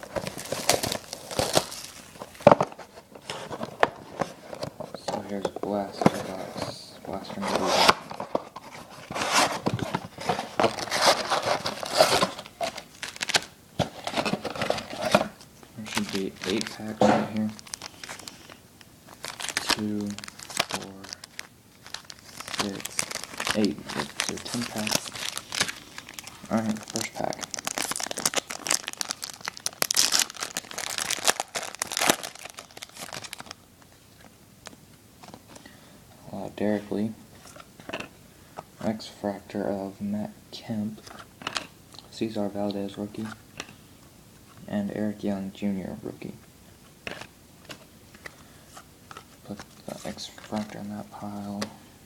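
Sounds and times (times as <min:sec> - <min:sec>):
packaging crinkling and tearing: 0:00.0 - 0:02.8, 0:07.5 - 0:33.6, 0:47.0 - 0:51.6.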